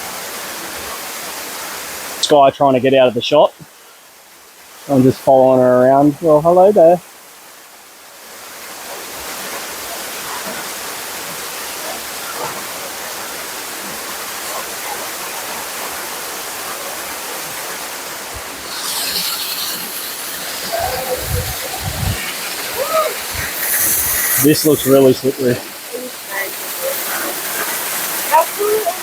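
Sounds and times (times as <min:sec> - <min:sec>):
waterfall rushing: 0:00.0 - 0:29.0
low thumps: 0:20.6 - 0:24.9.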